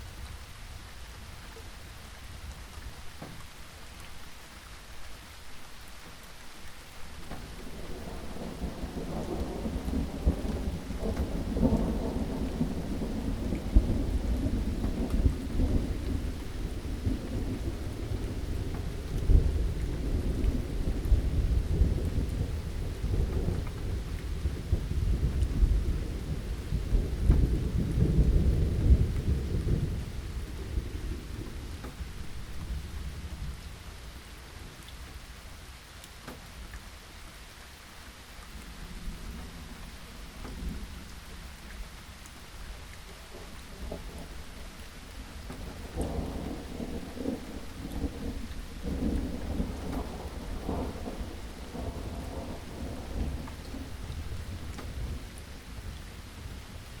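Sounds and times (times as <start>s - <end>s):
steady rain: 0.0s - 57.0s
thunder rumbling: 7.2s - 34.2s, 38.5s - 57.0s.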